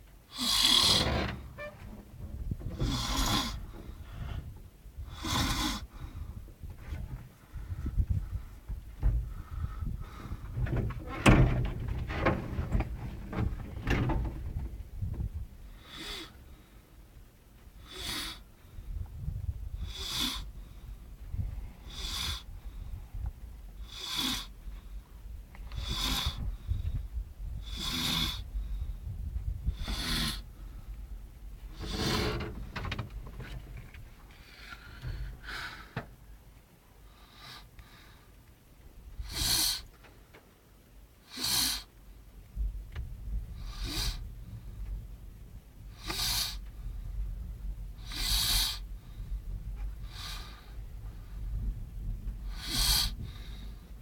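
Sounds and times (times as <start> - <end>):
person snoring heavily: 0.3 - 1.2, 2.8 - 3.7, 5.1 - 5.9, 15.8 - 16.3, 17.8 - 18.4, 19.8 - 20.5, 21.9 - 22.4, 23.8 - 24.5, 25.8 - 26.4, 27.7 - 28.4, 29.8 - 30.4, 41.3 - 41.9, 48.0 - 48.8, 52.5 - 53.2.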